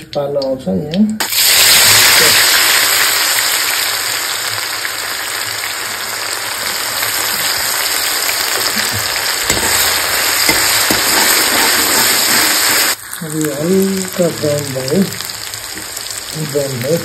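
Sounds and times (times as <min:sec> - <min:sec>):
hot oil sizzling: 0:00.0 - 0:17.0
spoon scraping a pan: 0:09.4 - 0:13.0.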